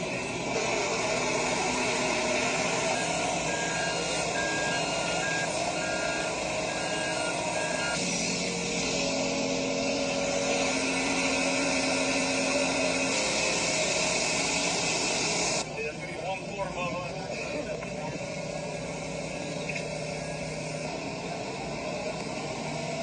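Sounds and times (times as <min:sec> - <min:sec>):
construction site noise: 0:00.0 - 0:23.0
engine hum: 0:00.0 - 0:23.0
vehicle reversing alarm beeping: 0:00.4 - 0:15.6.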